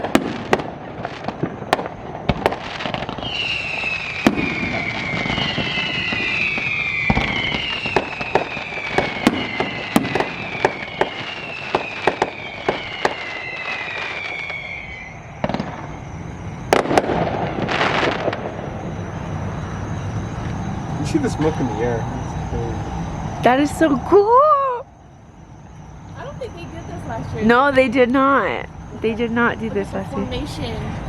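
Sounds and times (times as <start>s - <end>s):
fireworks bangs and pops: 0.0s - 19.0s
fireworks hissing burst: 0.0s - 24.0s
fireworks whistling downward: 0.0s - 31.0s.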